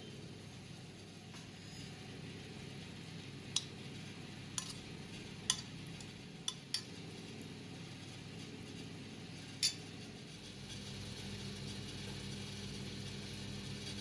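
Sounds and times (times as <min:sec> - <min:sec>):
steady low hum: 0:00.0 - 0:14.0
kitchen utensils clinking: 0:04.6 - 0:04.8, 0:09.6 - 0:09.9.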